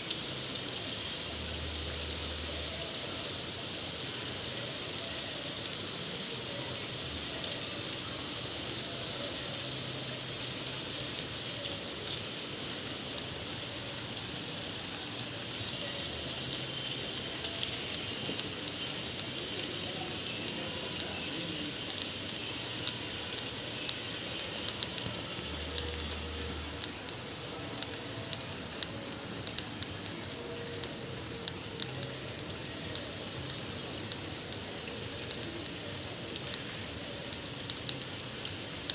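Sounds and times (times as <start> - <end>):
steady rain hissing: 0.0 - 38.9
raindrops tapping: 15.8 - 38.9.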